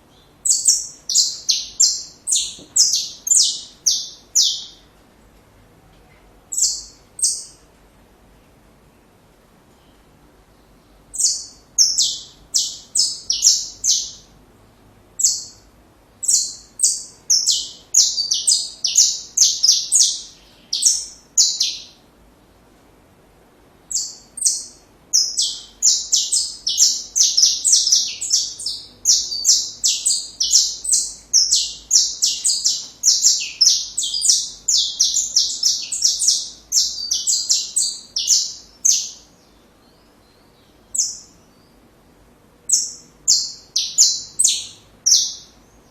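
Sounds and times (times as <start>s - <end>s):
finch singing: 0.0s - 4.9s, 6.5s - 7.6s, 9.8s - 14.3s, 15.2s - 22.0s, 23.9s - 41.8s, 42.7s - 45.9s.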